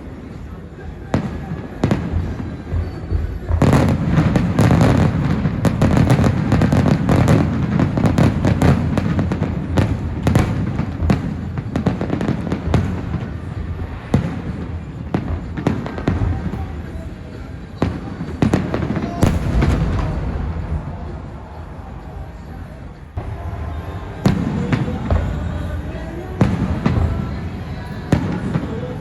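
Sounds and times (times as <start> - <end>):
fireworks booming and crackling: 0.0 - 29.0.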